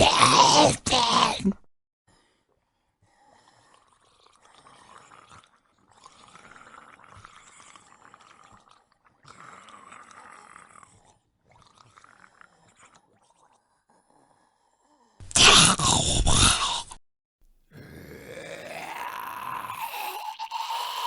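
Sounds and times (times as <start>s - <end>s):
wet squelching and slurping: 3.6s - 14.0s, 15.2s - 17.0s, 18.1s - 21.0s.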